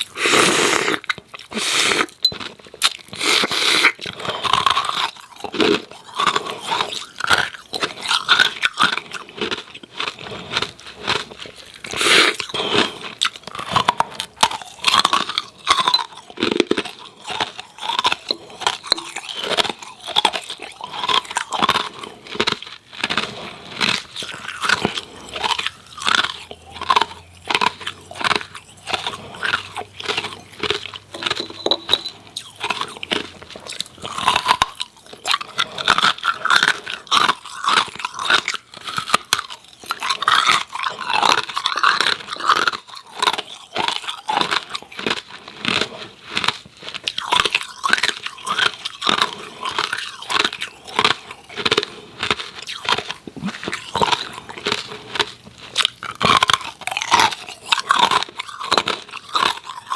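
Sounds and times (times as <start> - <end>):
crunching ice cubes: 0.0 - 59.9.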